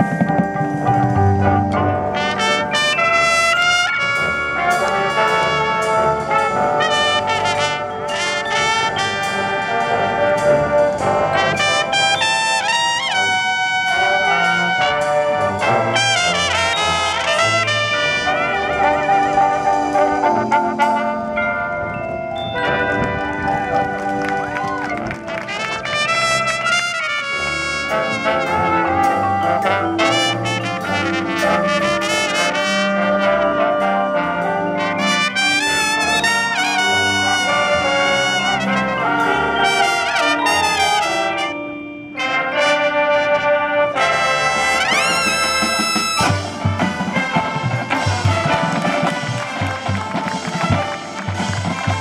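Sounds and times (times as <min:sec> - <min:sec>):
brass ensemble playing: 0:00.0 - 0:52.0
rising rip in high brass: 0:23.7 - 0:41.6, 0:42.3 - 0:52.0.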